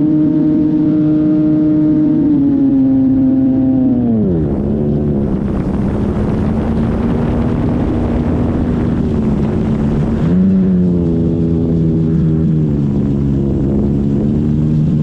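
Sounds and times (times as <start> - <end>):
wind buffeting microphone: 2.6 - 15.0.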